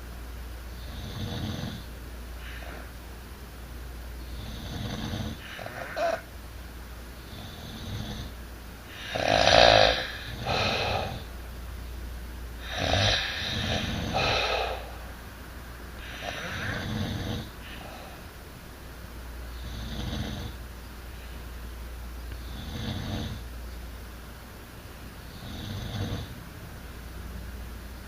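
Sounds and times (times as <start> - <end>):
snoring: 0.8 - 2.9, 4.2 - 6.2, 7.2 - 11.3, 12.6 - 15.0, 16.0 - 18.2, 19.5 - 20.6, 22.4 - 23.4, 25.3 - 26.4.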